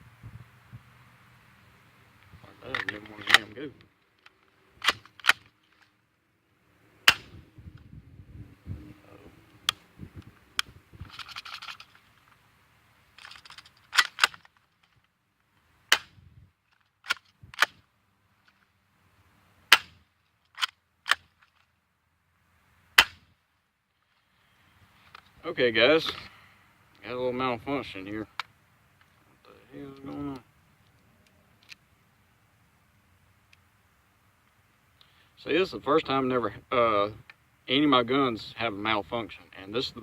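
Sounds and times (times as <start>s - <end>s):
handling rustle: 2.2s - 6.0s, 10.0s - 18.8s, 23.9s - 26.4s
air pistol cocking and firing: 4.8s - 5.6s, 7.0s - 7.4s, 13.2s - 14.5s, 15.9s - 16.2s, 17.0s - 17.8s, 19.7s - 21.5s, 23.0s - 23.3s.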